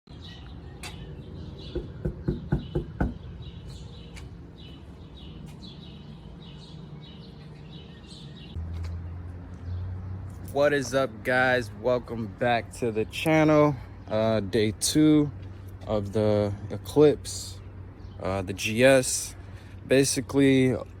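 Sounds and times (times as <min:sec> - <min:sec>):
small birds chirping: 0:00.1 - 0:21.0
knocking: 0:01.7 - 0:03.2.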